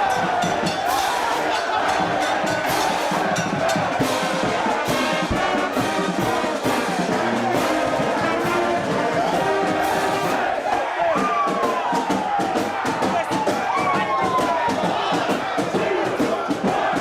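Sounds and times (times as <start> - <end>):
brass band playing: 0.0 - 11.9.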